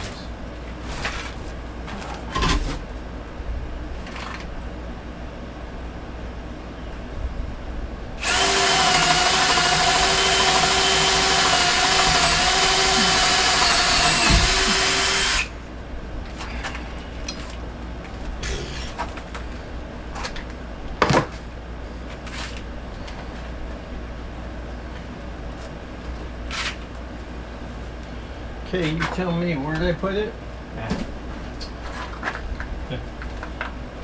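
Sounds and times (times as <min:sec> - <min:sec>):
power drill whining: 0:08.2 - 0:15.6.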